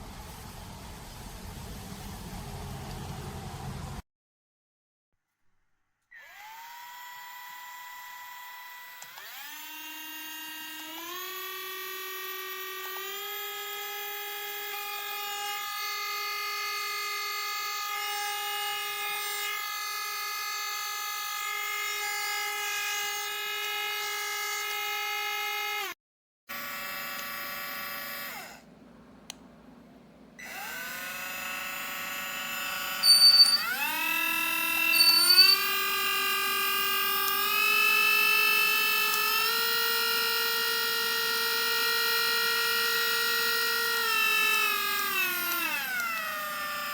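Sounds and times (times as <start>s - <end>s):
rotary tool motor whining: 6.2s - 16.4s, 30.4s - 46.9s.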